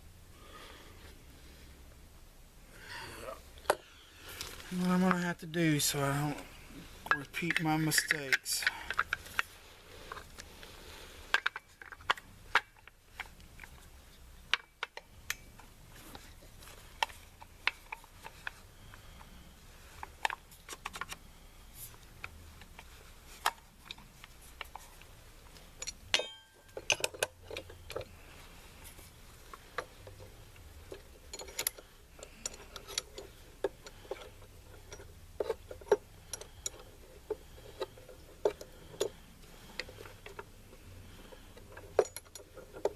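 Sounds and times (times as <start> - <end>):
metal parts clinking: 7.1 - 9.5, 25.6 - 28.1, 30.9 - 40.4, 41.0 - 42.9.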